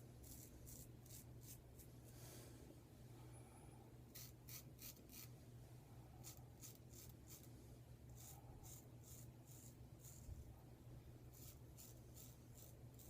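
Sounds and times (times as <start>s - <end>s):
razor scraping stubble: 0.2s - 1.9s, 4.1s - 5.3s, 6.2s - 7.5s, 8.2s - 10.3s, 11.3s - 13.0s.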